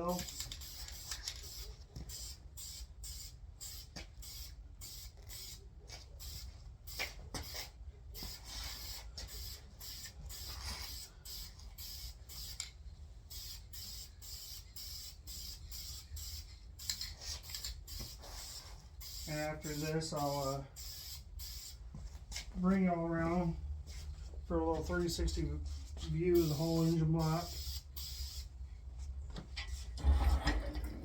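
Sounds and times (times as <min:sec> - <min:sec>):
aerosol spray can hissing: 0:00.2 - 0:05.6, 0:06.2 - 0:12.6, 0:13.3 - 0:21.8, 0:26.4 - 0:28.5.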